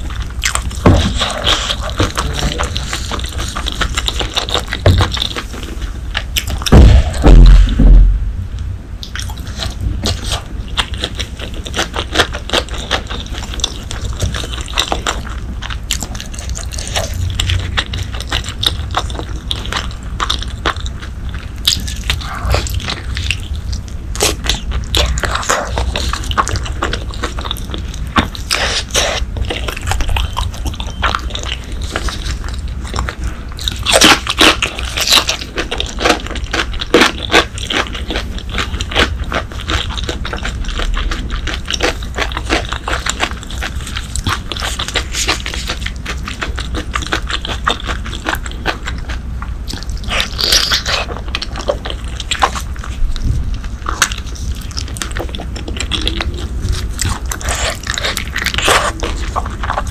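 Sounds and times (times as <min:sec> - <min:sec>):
close chewing and biting: 0:00.0 - 0:07.9, 0:09.0 - 0:59.9.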